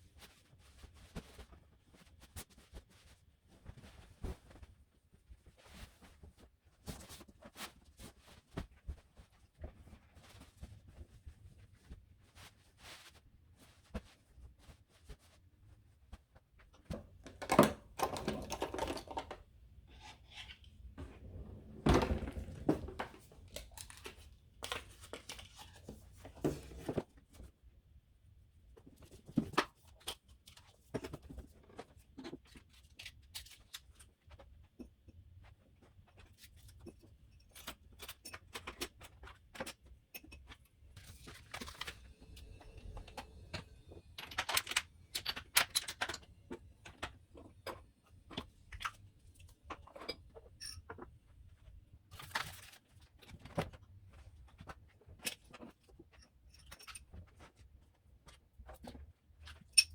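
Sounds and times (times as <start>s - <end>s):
household items clinking: 17.2s - 24.8s.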